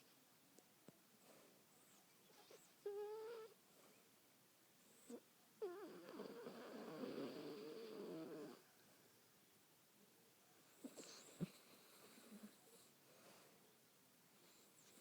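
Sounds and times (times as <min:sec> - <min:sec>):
dog snoring: 0:02.4 - 0:03.5, 0:04.9 - 0:08.6, 0:10.8 - 0:12.9.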